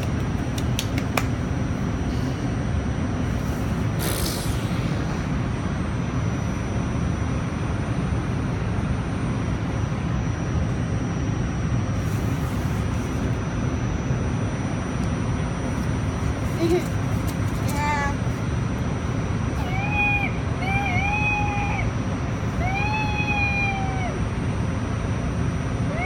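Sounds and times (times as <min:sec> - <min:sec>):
train carriage rumble: 0:00.0 - 0:04.0
train rumble inside carriage: 0:00.0 - 0:06.6, 0:14.8 - 0:24.4
faint high whine: 0:01.3 - 0:26.0
brief hiss: 0:04.0 - 0:04.8.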